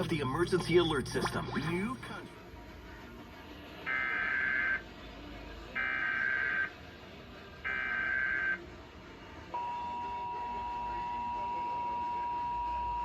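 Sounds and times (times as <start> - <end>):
warbling digital data tones: 0.0 - 2.2
steady attention tone: 0.0 - 2.3.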